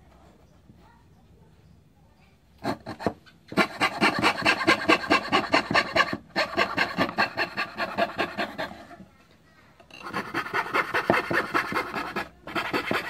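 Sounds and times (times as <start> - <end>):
fretsaw sawing through wood: 2.6 - 9.0, 10.0 - 13.0.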